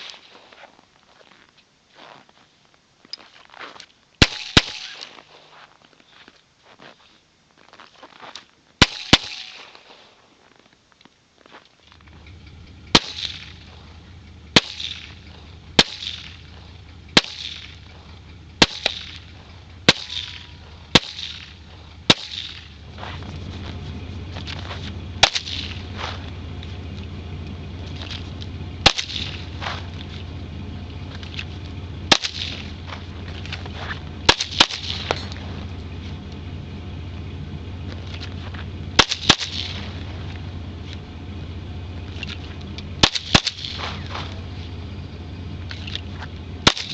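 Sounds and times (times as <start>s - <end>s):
handgun shots with echo: 4.2s - 5.2s, 8.8s - 9.9s
low rumble: 11.9s - 46.9s.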